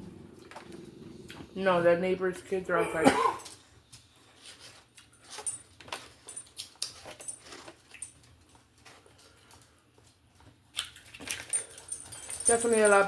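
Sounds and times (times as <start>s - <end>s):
chewing and mouth clicks: 6.4s - 8.0s, 10.4s - 12.1s.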